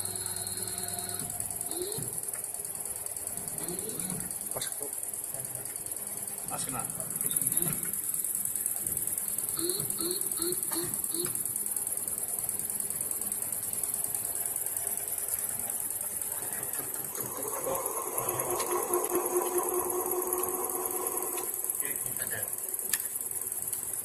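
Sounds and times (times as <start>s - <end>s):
electric motor chirps: 0.0s - 2.3s, 3.4s - 4.3s, 9.5s - 11.6s
electric motor whirring hum: 0.0s - 2.3s, 16.8s - 22.0s
constant high hiss: 0.0s - 24.0s.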